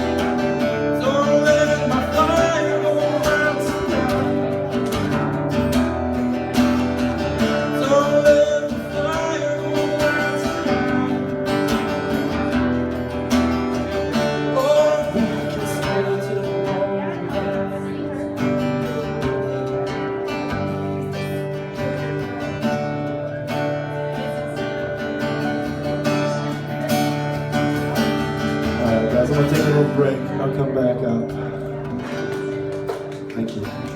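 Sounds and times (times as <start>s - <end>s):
acoustic guitar strumming chords: 0.0s - 33.9s.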